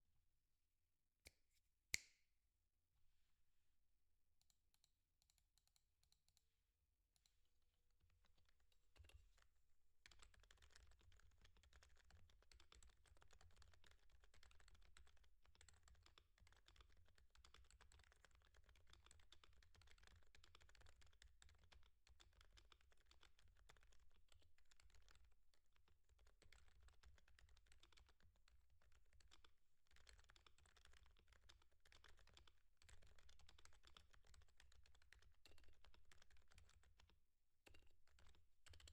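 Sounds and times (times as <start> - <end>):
typing on keyboard: 10.1 - 38.9.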